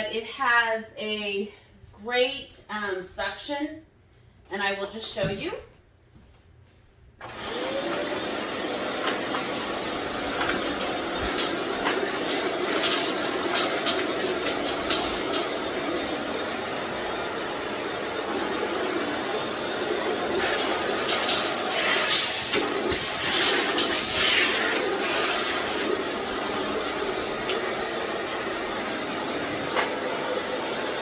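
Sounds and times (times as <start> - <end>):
vacuum cleaner running: 7.2 - 31.0.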